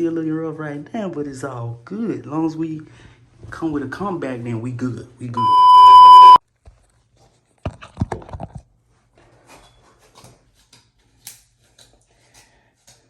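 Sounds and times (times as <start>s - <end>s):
loud steady beep: 5.4s - 6.4s.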